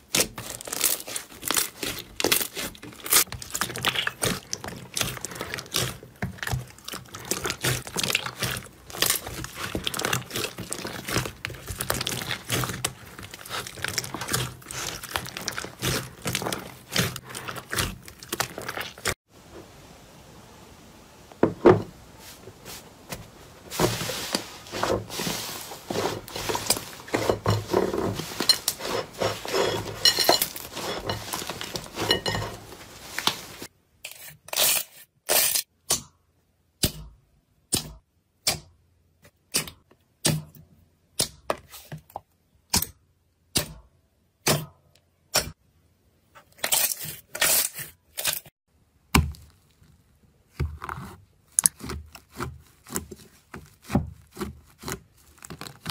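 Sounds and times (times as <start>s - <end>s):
slime crunching: 0.0s - 19.2s, 23.7s - 33.7s, 49.1s - 55.9s
slime crackling and popping: 0.1s - 19.2s, 49.1s - 55.9s.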